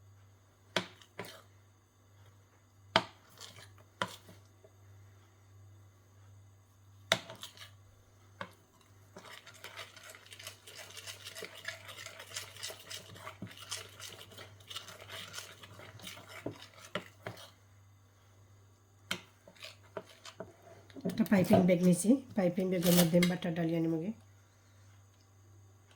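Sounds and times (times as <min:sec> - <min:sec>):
utensil stirring batter in bowl: 0:00.7 - 0:01.6, 0:02.2 - 0:04.8, 0:07.0 - 0:17.9, 0:19.0 - 0:23.8.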